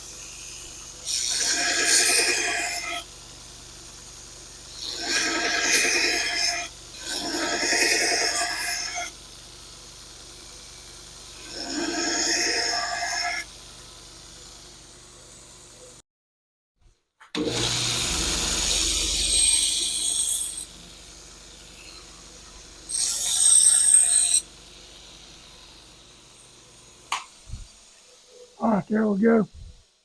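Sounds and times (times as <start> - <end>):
grinder grinding steel: 4.8 - 9.1, 17.6 - 20.7, 22.9 - 24.5.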